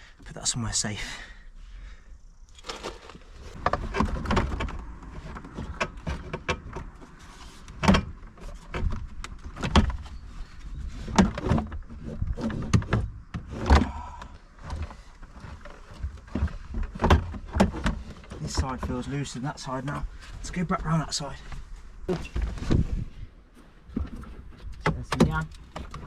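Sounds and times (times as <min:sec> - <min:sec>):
car trim parts knocking and rattling: 0:02.6 - 0:19.4, 0:23.8 - 0:26.0.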